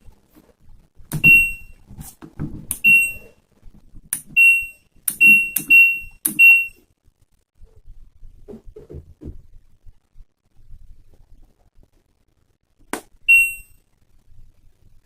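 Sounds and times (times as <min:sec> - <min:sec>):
short high beeps: 0:01.2 - 0:01.8, 0:02.8 - 0:03.3, 0:04.4 - 0:06.8, 0:13.3 - 0:13.8
button clicks: 0:05.1 - 0:06.7.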